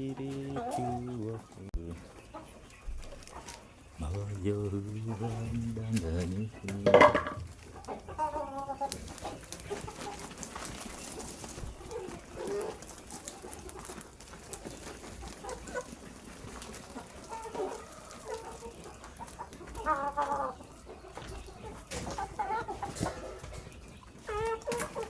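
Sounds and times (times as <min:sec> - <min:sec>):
chickens clucking: 0:00.0 - 0:25.0.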